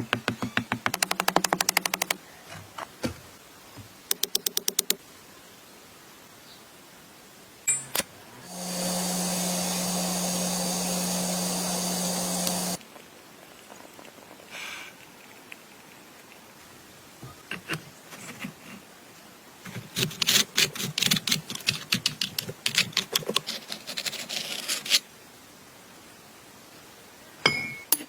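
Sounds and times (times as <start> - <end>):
rapid sharp clicks: 0.8 - 2.2
machine humming and hissing: 8.4 - 12.8.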